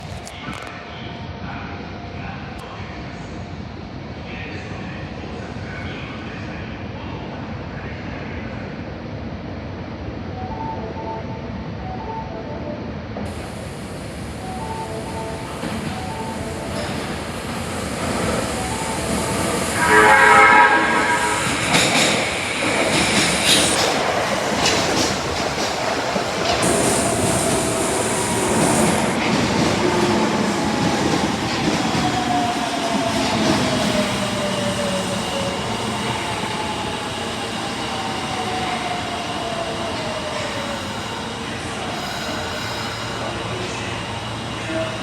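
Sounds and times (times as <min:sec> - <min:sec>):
train rumble: 0:00.0 - 0:45.0
subway door chime: 0:10.3 - 0:44.0.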